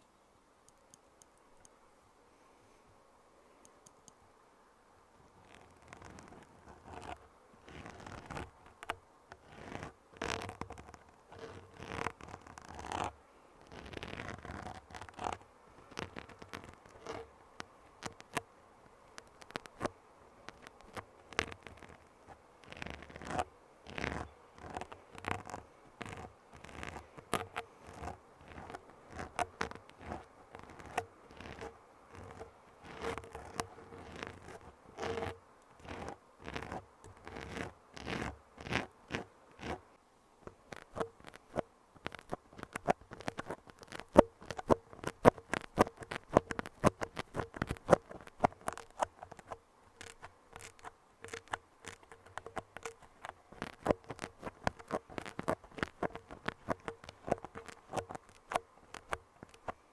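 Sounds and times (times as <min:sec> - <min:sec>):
small sharp clicks: 0:00.6 - 0:01.8, 0:03.6 - 0:04.2, 0:19.1 - 0:39.8, 0:40.4 - 0:59.8
scratchy rubbing strokes: 0:05.2 - 0:39.9, 0:40.5 - 0:59.9.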